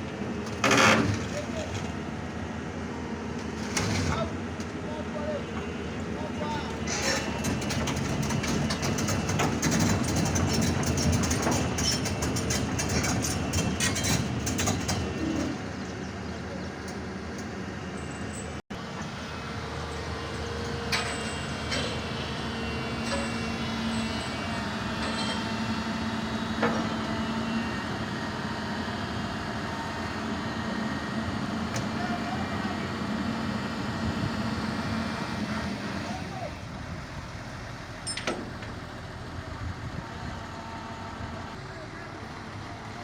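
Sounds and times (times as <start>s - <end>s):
excavator engine running: 0.0s - 43.0s
metallic clanking and rattling: 6.8s - 15.6s.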